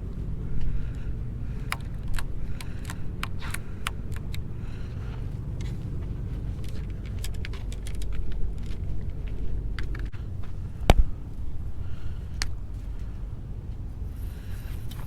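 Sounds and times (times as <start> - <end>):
steady low rumble: 0.0 - 15.0
light clicks and rattles: 0.1 - 11.0.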